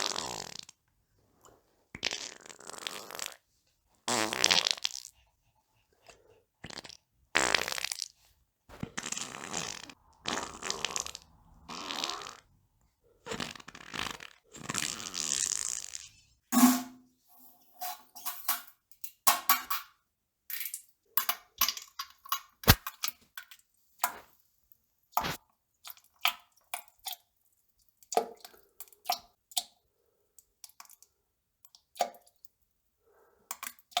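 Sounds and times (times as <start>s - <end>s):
wet crackles pops and squishes: 21.6s - 23.2s, 25.2s - 25.4s.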